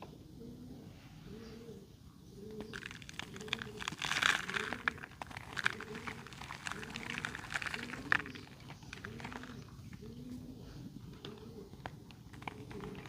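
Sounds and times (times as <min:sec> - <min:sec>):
dry mud crumbling: 0:02.7 - 0:10.0, 0:12.1 - 0:13.0.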